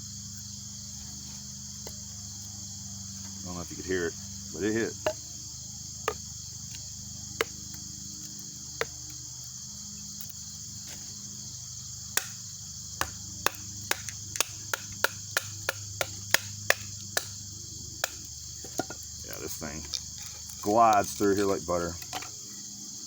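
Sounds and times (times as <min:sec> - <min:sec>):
crickets chirping: 0:00.0 - 0:23.0
knife knocking into wood: 0:18.0 - 0:19.0.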